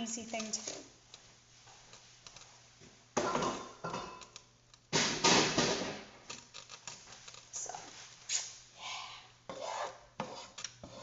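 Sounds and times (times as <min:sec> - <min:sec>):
kitchen utensils clattering: 0:03.2 - 0:04.4.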